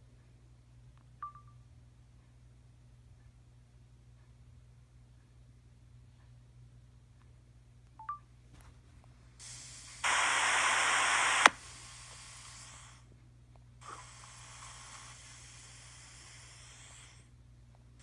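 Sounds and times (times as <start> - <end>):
phone static hiss: 9.4 - 13.1, 13.8 - 17.3.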